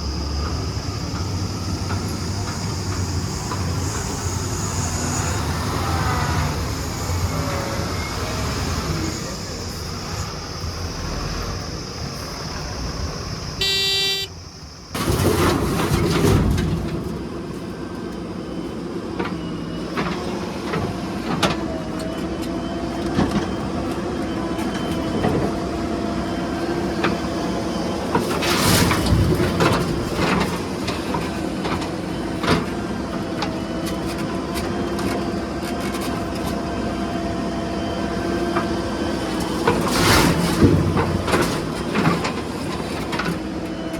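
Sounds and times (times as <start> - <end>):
short horn toot: 13.6 - 14.3.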